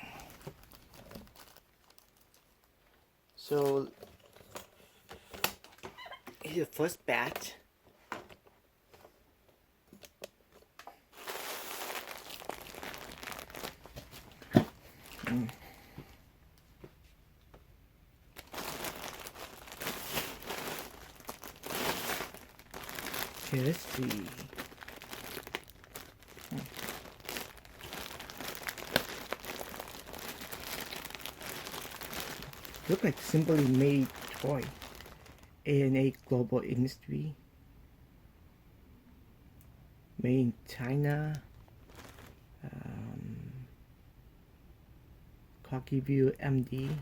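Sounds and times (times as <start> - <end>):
packaging crinkling: 0.0 - 3.0, 10.0 - 15.9, 18.4 - 35.6, 41.5 - 42.4.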